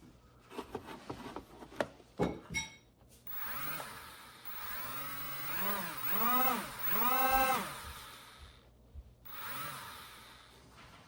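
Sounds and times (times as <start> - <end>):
small electric motor whining: 3.3 - 10.8.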